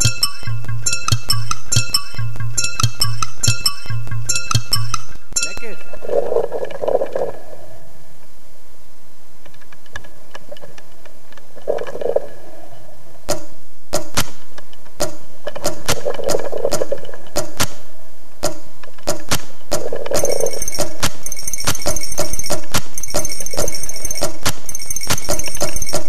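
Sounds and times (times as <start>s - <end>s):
sharp ringing clinks: 20.2s - 26.0s.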